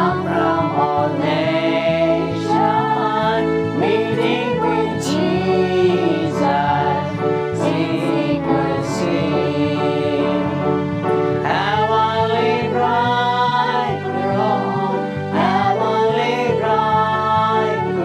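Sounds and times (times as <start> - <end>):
congregation singing a hymn: 0.0 - 18.0
instrumental accompaniment: 0.0 - 18.0
woman singing lead: 11.4 - 18.0.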